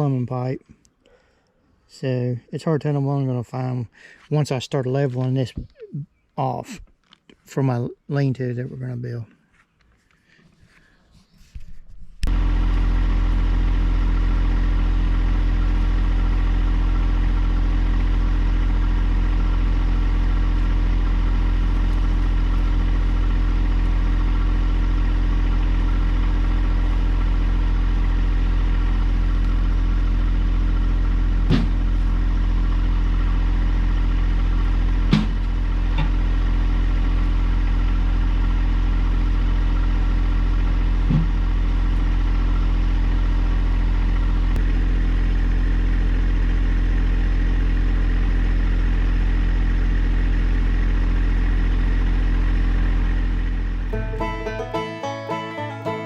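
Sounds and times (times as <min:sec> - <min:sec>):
tractor diesel engine running: 0:12.2 - 0:56.0.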